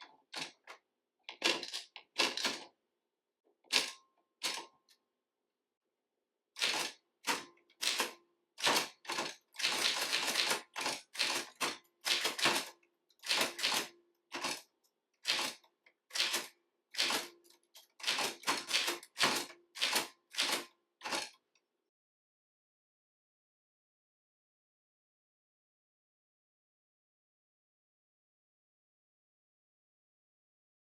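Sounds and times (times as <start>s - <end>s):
typewriter keys striking: 6.6s - 14.6s, 15.3s - 17.4s, 18.0s - 21.3s.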